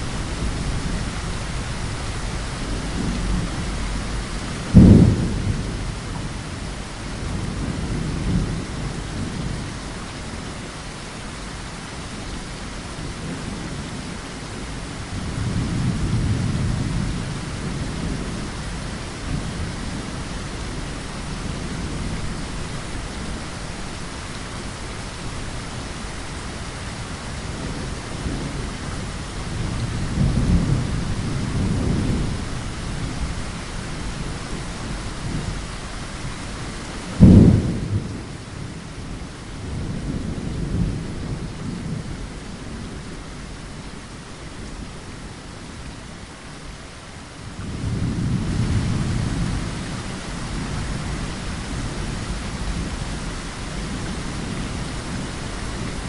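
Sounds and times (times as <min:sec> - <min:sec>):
rolling thunder rumbles: 0:00.0 - 0:10.0, 0:26.9 - 0:45.4, 0:47.4 - 0:56.0
heavy rain hissing: 0:00.0 - 0:56.0
sharp thunderclap: 0:04.7 - 0:05.7, 0:37.1 - 0:38.3.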